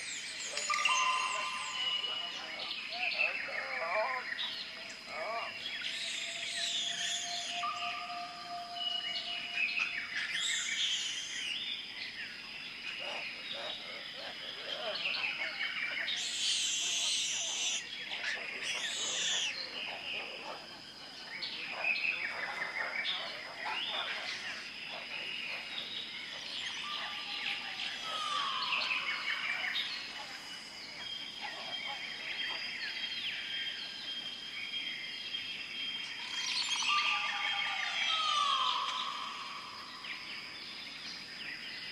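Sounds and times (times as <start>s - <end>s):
high-pitched insect drone: 0.0s - 3.0s, 5.9s - 11.5s, 16.1s - 19.7s
birds chirping and whistling: 0.0s - 3.4s, 5.8s - 11.6s, 16.0s - 19.6s, 36.1s - 40.4s
birds calling and chirping: 0.0s - 41.9s.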